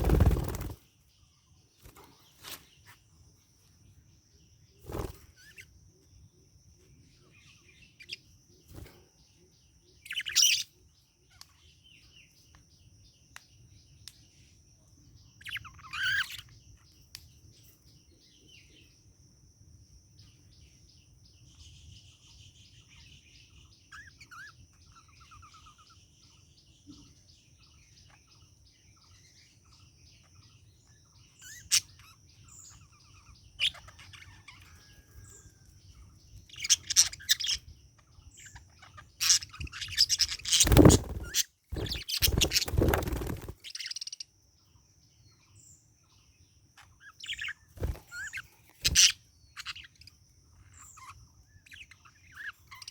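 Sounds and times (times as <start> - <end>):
sharp loud bird calls: 10.0 - 10.8, 15.4 - 16.6, 36.3 - 44.4, 46.8 - 52.9
budgerigar chirping and warbling: 10.1 - 10.7, 15.4 - 16.5, 36.5 - 37.7, 38.4 - 44.2, 46.8 - 52.9.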